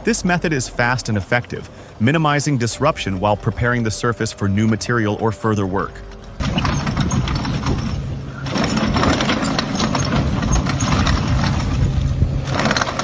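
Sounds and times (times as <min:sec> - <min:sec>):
heavy machine engine running: 0:00.0 - 0:13.0
harsh clattering: 0:05.4 - 0:13.0.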